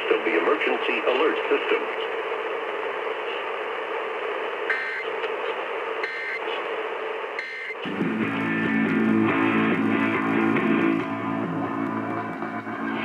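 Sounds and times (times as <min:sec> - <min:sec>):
radio hiss and static: 0:00.0 - 0:08.8
data burst tones: 0:04.7 - 0:05.1, 0:06.0 - 0:06.4, 0:07.4 - 0:07.8
guitar music: 0:07.8 - 0:13.0.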